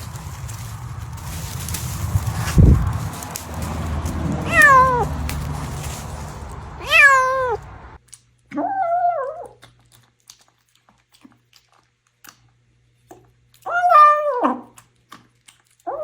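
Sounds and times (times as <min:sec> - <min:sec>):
steady background noise: 0:00.0 - 0:08.0
cat meowing: 0:04.4 - 0:05.2, 0:06.8 - 0:07.8, 0:13.7 - 0:14.7.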